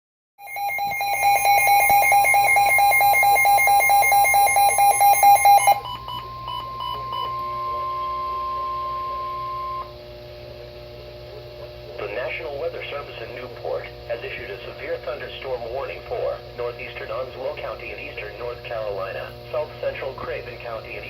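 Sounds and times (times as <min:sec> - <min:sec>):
rapid electronic beeping: 0:00.4 - 0:08.6
steady alert tone: 0:00.4 - 0:08.8
faint hum: 0:00.4 - 0:21.0.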